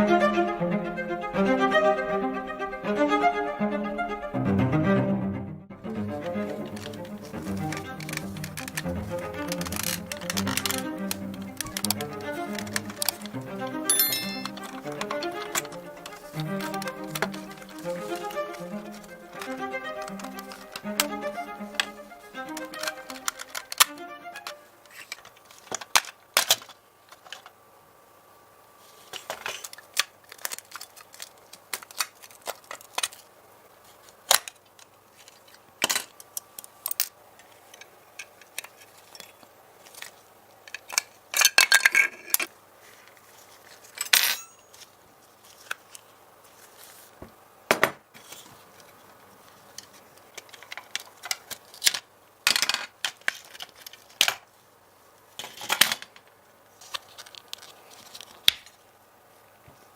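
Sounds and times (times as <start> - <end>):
metal parts and tools clinking: 13.9 - 14.6, 44.0 - 44.8.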